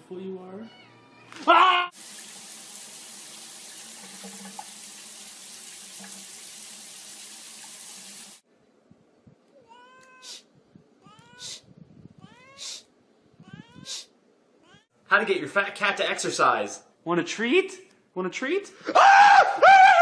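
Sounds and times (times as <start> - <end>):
cat meowing: 9.6 - 11.6, 12.2 - 12.8, 13.4 - 14.9.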